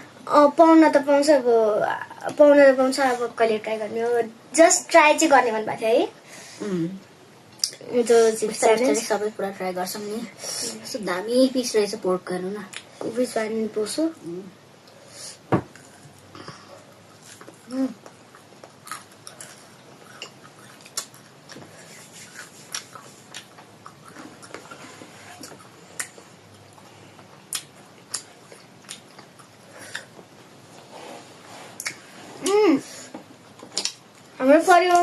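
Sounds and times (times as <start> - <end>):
chewing with wet mouth clicks: 17.3 - 21.6, 25.4 - 30.1, 33.7 - 34.3.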